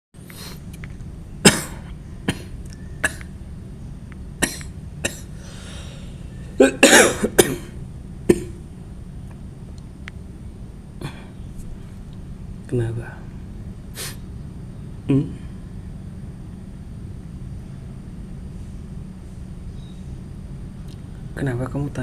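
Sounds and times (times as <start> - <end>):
man coughing: 1.4 - 3.2, 6.6 - 8.6.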